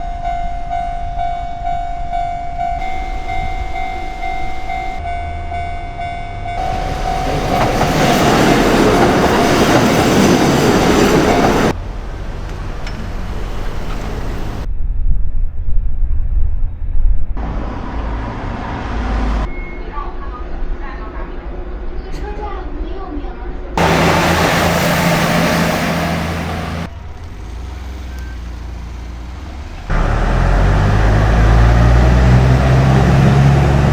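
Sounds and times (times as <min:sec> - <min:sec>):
level crossing warning bell: 0:00.0 - 0:11.8
railcar running and wheel noise: 0:00.0 - 0:33.9
vehicle engine humming: 0:02.9 - 0:14.7, 0:17.3 - 0:33.9.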